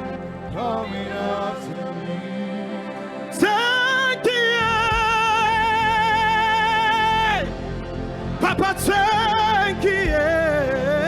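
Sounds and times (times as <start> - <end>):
bass: 0.0 - 1.8, 4.3 - 11.0
sustained keyboard chords: 0.0 - 11.0.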